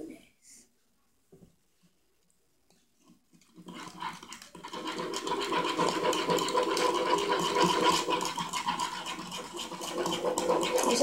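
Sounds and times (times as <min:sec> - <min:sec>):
spoon scraping inside a cup: 0:03.4 - 0:11.0.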